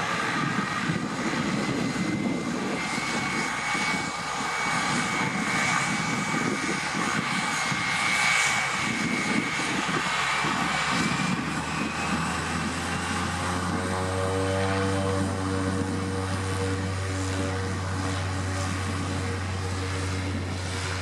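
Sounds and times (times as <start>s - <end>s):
high engine whine: 0.0s - 21.0s
turboprop engine running: 0.0s - 21.0s.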